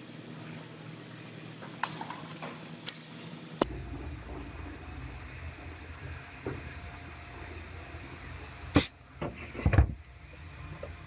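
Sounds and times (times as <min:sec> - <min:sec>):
steady low hum: 0:02.6 - 0:11.0.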